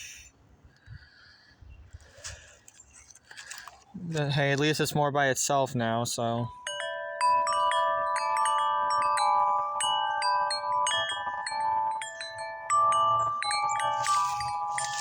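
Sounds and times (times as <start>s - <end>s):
wind chime ringing: 6.5s - 15.0s.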